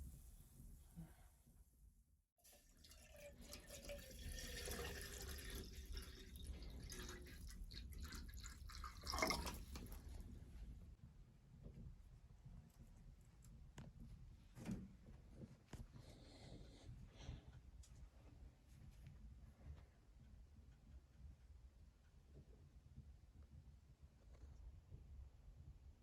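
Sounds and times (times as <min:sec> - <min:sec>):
water dripping and trickling: 0:02.5 - 0:10.3.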